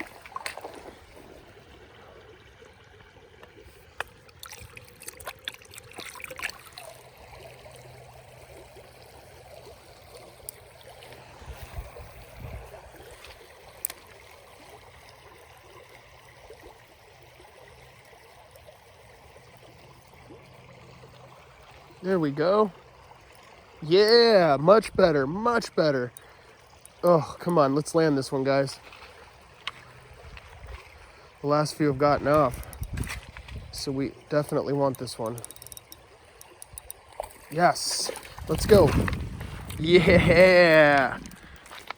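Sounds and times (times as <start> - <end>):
creek water running: 0.0 - 41.9.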